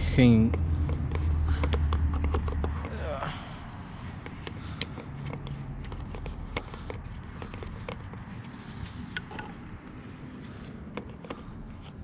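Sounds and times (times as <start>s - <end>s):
plastic clicks and taps: 0.5s - 2.9s, 4.2s - 8.3s.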